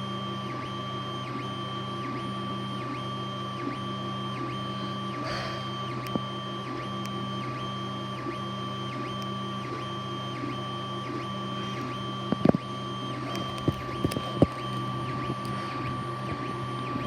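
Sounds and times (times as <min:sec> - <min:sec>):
steady hum: 0:05.1 - 0:06.3, 0:11.0 - 0:17.0
stepper motors whirring: 0:11.5 - 0:17.0.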